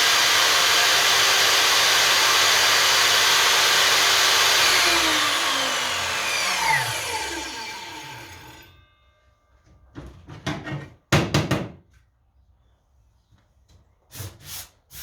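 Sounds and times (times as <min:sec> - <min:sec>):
table saw spinning down: 0:00.0 - 0:08.7.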